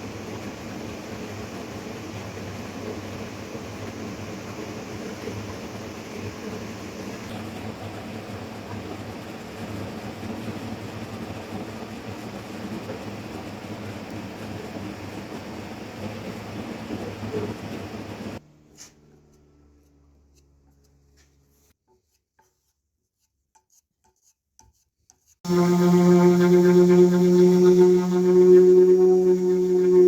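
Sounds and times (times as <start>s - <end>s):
woodworking power tool humming: 25.5s - 30.0s.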